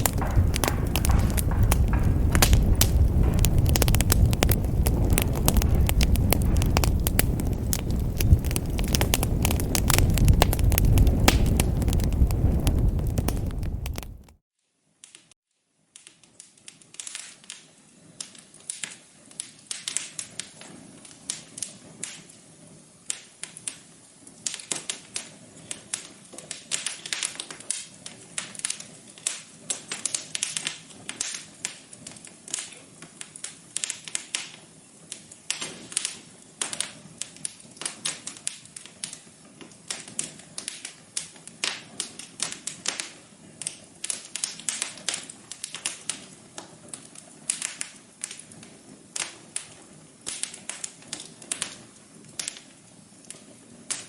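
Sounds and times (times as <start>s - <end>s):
soft fire hiss: 0.0s - 14.4s
wood fire crackling: 0.0s - 14.4s, 16.0s - 54.0s.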